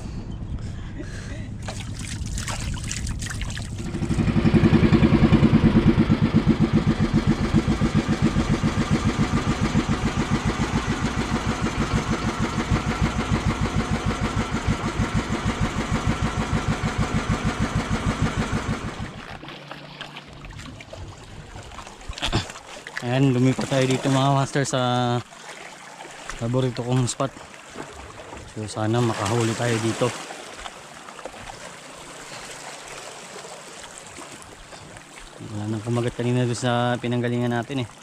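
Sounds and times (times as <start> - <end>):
small engine puttering: 3.1 - 20.3.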